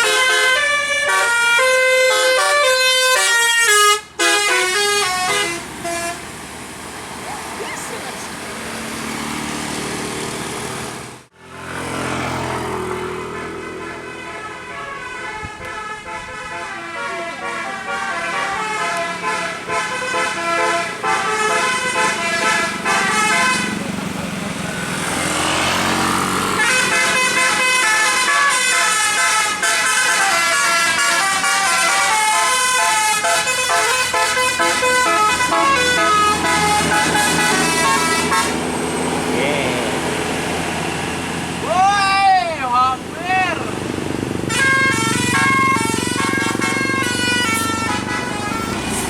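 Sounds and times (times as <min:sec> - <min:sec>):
bus multi-tone air horn melody: 0:00.0 - 0:06.4, 0:13.1 - 0:24.0, 0:24.7 - 0:39.3, 0:44.4 - 0:49.0.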